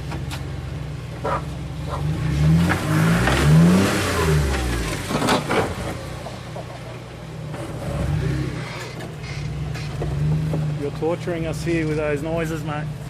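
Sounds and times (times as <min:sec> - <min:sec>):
engine revving in surges: 0:01.2 - 0:06.8, 0:07.4 - 0:12.1.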